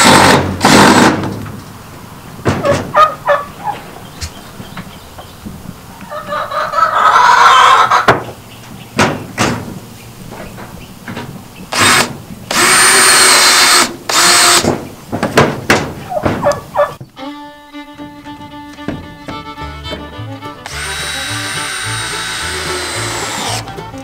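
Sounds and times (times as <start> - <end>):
power drill whining: 11.7 - 14.6, 20.6 - 23.7.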